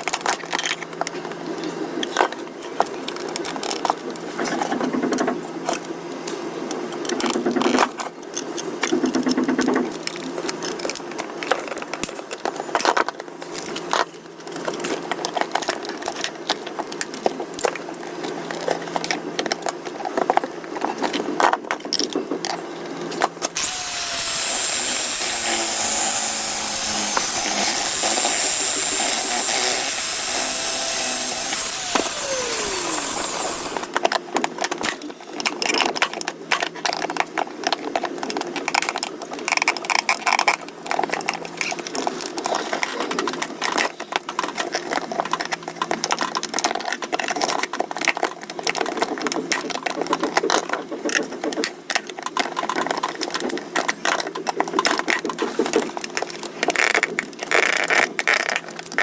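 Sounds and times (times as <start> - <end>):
tool clicking on plastic parts: 23.2 - 37.8
small power tool whining: 23.6 - 34.0.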